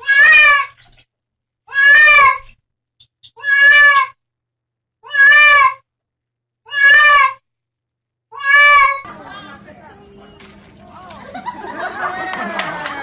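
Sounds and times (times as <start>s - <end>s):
cat meowing loudly: 0.0s - 0.8s, 1.7s - 2.5s, 3.4s - 4.2s, 5.0s - 5.8s, 6.7s - 7.4s, 8.3s - 9.0s.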